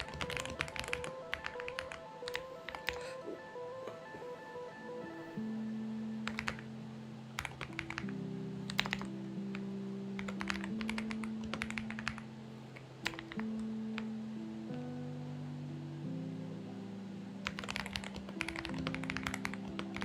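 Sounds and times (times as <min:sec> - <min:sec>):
mechanical keyboard typing: 0:00.0 - 0:03.2, 0:06.2 - 0:06.6, 0:07.4 - 0:09.6, 0:10.2 - 0:12.2, 0:12.8 - 0:14.1, 0:17.4 - 0:20.0
background music of held chords: 0:00.0 - 0:20.0.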